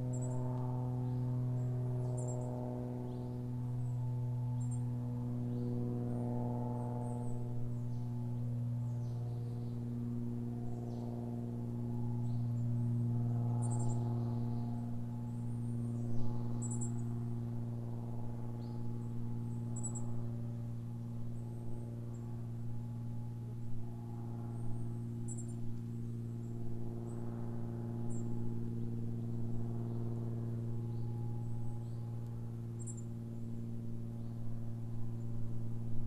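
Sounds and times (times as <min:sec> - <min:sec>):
distant propeller aircraft droning: 0:00.0 - 0:36.0
birds chirping: 0:32.8 - 0:33.1.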